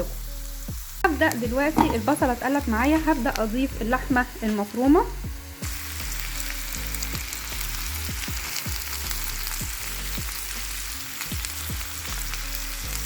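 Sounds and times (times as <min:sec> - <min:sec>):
meat sizzling in a frying pan: 0:00.0 - 0:13.0
light knocks: 0:01.8 - 0:02.1.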